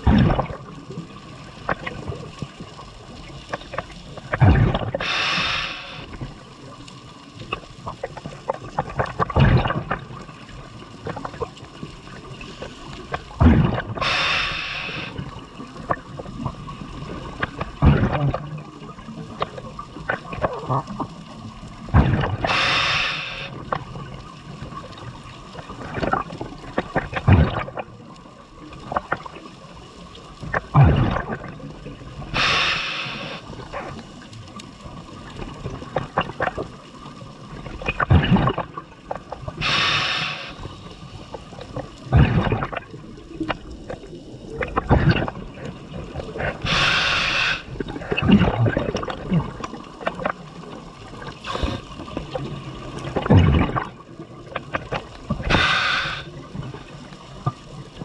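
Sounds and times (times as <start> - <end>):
diver exhaling bubbles: 0.0 - 1.0, 4.2 - 6.2, 13.2 - 18.8, 21.8 - 24.0, 25.7 - 27.9, 30.5 - 34.1, 37.8 - 40.9, 41.8 - 43.6, 44.5 - 57.5
water gurgling and bubbling: 0.0 - 58.0.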